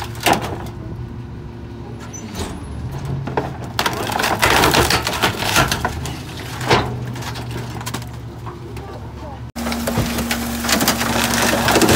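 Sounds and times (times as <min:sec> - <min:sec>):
garbage truck compactor crushing furniture: 0:00.0 - 0:01.1, 0:01.9 - 0:08.4, 0:09.6 - 0:11.9
truck engine and hydraulics hum: 0:00.0 - 0:11.9
wood cracking and snapping: 0:03.4 - 0:08.2, 0:09.6 - 0:11.9.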